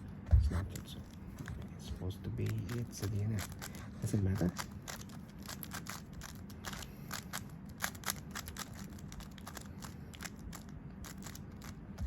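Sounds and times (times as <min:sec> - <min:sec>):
puzzle cube clicking and rattling: 0:02.4 - 0:12.0.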